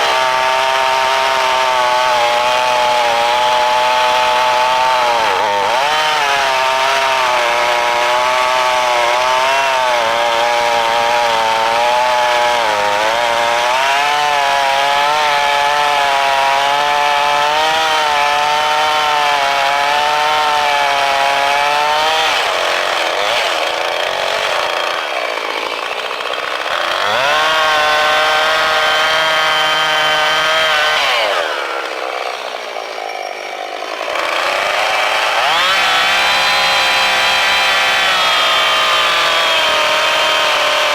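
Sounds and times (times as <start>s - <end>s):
chainsaw cutting log: 0.0s - 40.9s.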